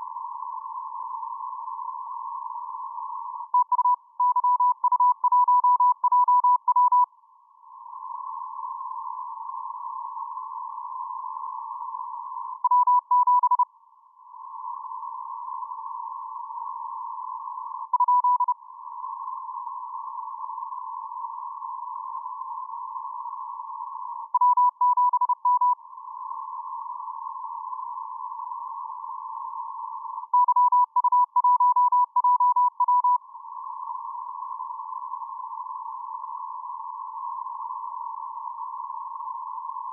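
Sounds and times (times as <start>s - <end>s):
morse code beeps: 3.6s - 7.1s, 12.7s - 13.6s, 18.0s - 18.6s, 24.4s - 25.8s, 30.4s - 33.2s.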